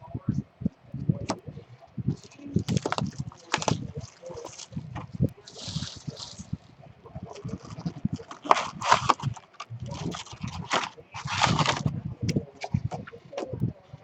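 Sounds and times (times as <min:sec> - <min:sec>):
packaging crinkling and rustling: 0:02.2 - 0:06.5, 0:07.3 - 0:11.9.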